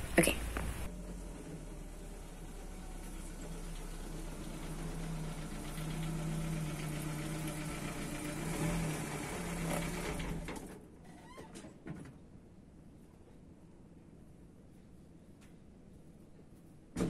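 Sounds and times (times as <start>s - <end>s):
motor humming: 0.0s - 10.7s.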